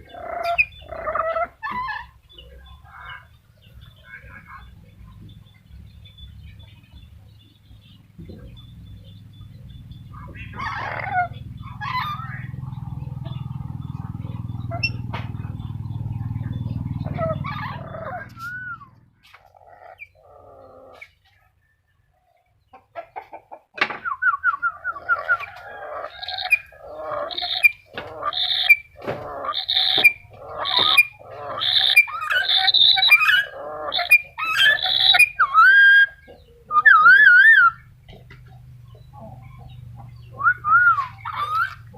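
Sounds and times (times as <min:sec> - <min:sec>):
parrot squawking and chattering: 0:00.0 - 0:03.3, 0:10.0 - 0:15.7, 0:16.4 - 0:21.1, 0:24.7 - 0:41.9
low rumble: 0:04.6 - 0:19.2
wavering whistled bird notes: 0:08.4 - 0:19.0, 0:23.9 - 0:28.9, 0:29.6 - 0:37.9, 0:40.2 - 0:41.9.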